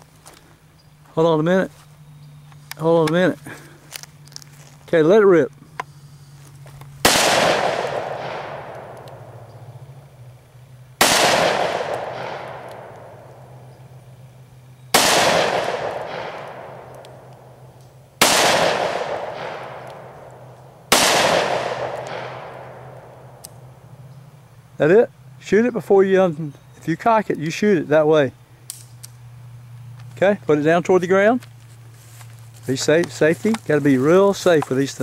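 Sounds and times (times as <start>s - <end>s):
faint low hum: 0.0s - 35.0s
revolver shots echoing: 7.0s - 9.8s, 11.0s - 13.8s, 14.9s - 23.4s.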